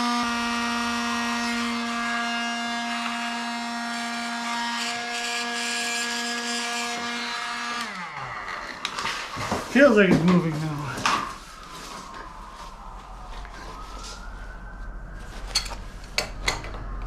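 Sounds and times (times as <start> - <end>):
heat gun fan humming and whining: 0.0 - 11.3.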